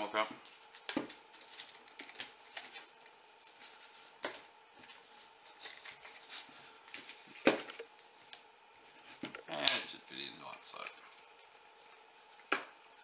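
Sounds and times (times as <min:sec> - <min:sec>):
plastic parts rustling: 0:00.9 - 0:04.4.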